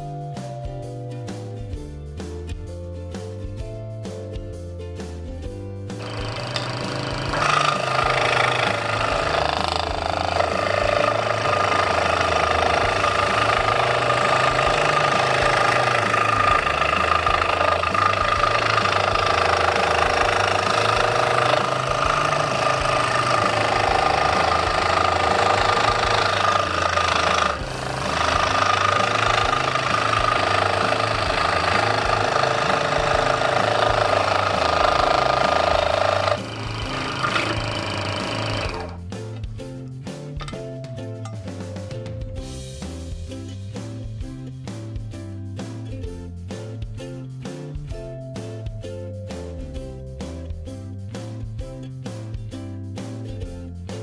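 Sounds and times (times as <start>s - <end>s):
scroll saw cutting wood: 5.9s - 39.1s.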